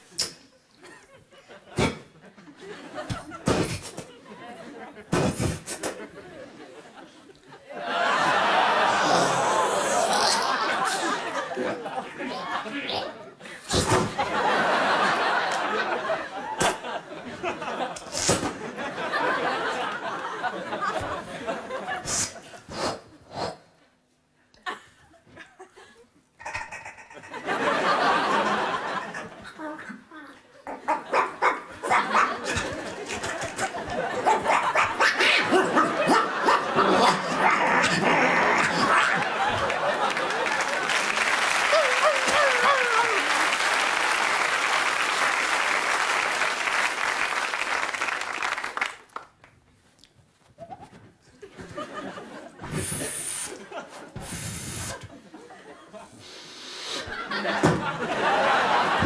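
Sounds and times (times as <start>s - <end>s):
small mouth noises: 0.1s - 0.5s, 3.2s - 4.1s, 5.1s - 6.0s, 9.1s - 11.0s, 22.0s - 23.8s, 26.4s - 27.3s, 52.6s - 53.6s, 54.2s - 55.1s
breathy mouth swishes: 3.5s - 4.1s, 5.1s - 6.0s, 13.7s - 14.2s, 18.0s - 18.6s, 22.0s - 23.7s, 52.6s - 55.1s, 56.2s - 57.1s
sharp mouth hiss: 3.5s - 4.1s, 5.1s - 6.0s, 18.0s - 18.6s, 22.0s - 23.7s, 52.6s - 55.1s, 56.2s - 57.1s
studio audience applauding: 38.6s - 49.5s.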